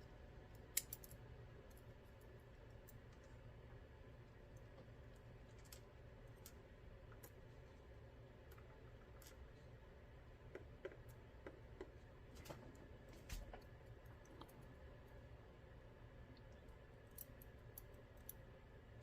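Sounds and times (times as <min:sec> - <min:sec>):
small metal lock parts clicking: 0:00.7 - 0:01.2.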